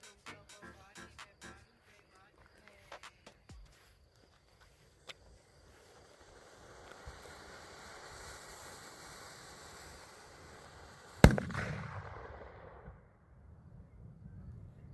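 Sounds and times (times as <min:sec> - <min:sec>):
steady hiss: 0:00.0 - 0:12.4
firecracker bang: 0:06.1 - 0:13.1
low rumbling echo: 0:11.3 - 0:14.9.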